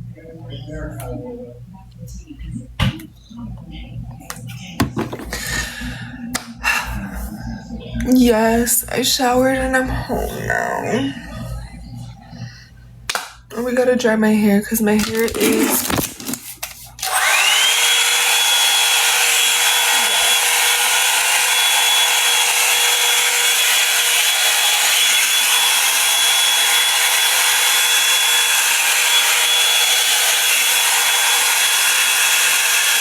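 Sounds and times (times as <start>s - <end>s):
hair dryer running: 4.3s - 7.2s, 14.9s - 33.0s.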